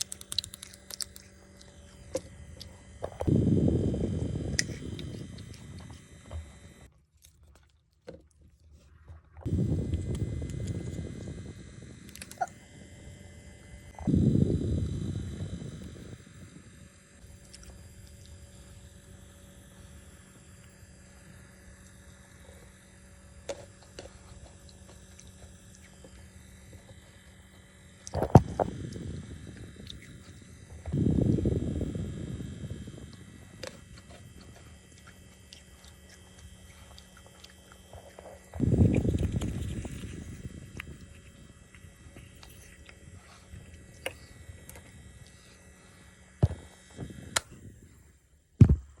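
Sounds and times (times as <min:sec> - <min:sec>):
wet mouth clicks: 0:00.0 - 0:01.8
noisy chewing: 0:00.0 - 0:03.3, 0:04.4 - 0:12.8, 0:17.2 - 0:47.6.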